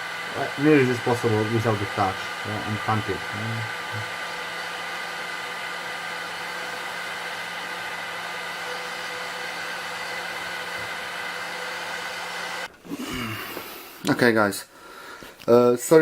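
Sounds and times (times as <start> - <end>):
heat gun blowing air: 0.0 - 14.1.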